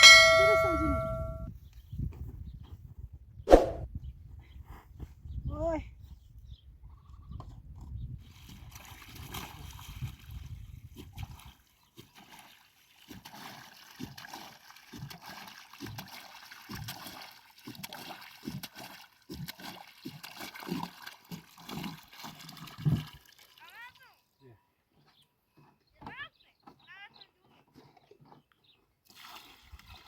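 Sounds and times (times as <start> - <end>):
water splashing and trickling: 8.2 - 24.3, 29.0 - 30.0.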